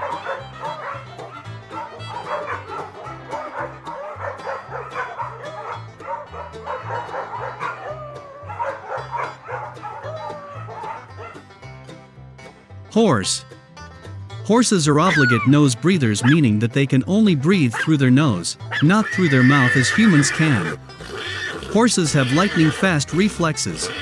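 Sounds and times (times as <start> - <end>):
dog barking and yipping: 0.0 - 11.5, 15.1 - 15.5, 16.2 - 16.4, 17.7 - 18.0, 18.7 - 22.8, 23.8 - 24.0
background music with bass: 0.0 - 24.0.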